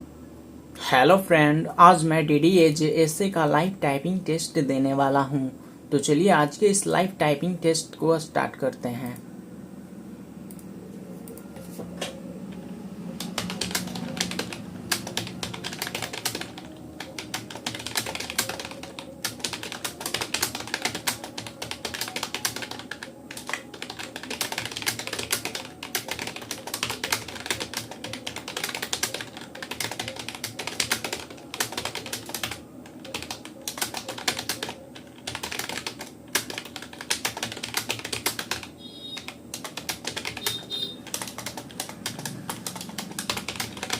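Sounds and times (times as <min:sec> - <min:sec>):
fast typing on keyboard: 0:13.2 - 0:43.9.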